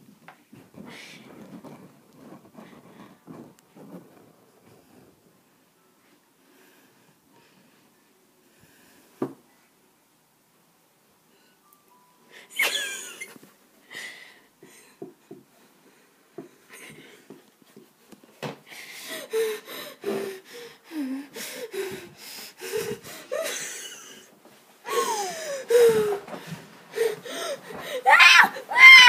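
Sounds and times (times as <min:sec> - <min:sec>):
raspy wheezing breaths: 0:18.7 - 0:28.7
falling cry: 0:27.0 - 0:29.0.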